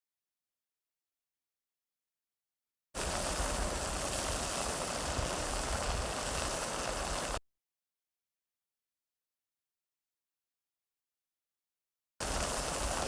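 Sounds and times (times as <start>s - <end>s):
waterfall rushing water: 3.0s - 7.4s, 12.2s - 13.0s.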